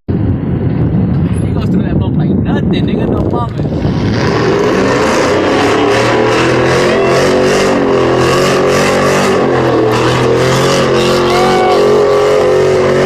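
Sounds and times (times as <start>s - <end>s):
truck exhaust at high revs: 3.7s - 13.0s.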